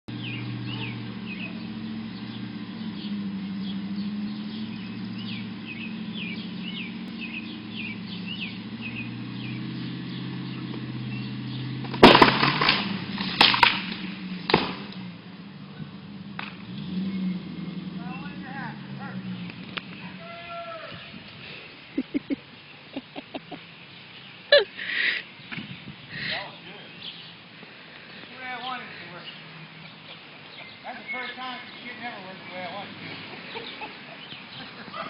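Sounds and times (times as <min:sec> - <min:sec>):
small birds chirping: 0:00.1 - 0:12.0, 0:14.9 - 0:35.0
car engine running: 0:00.1 - 0:20.2
tree branch cracking and tearing: 0:11.8 - 0:15.0.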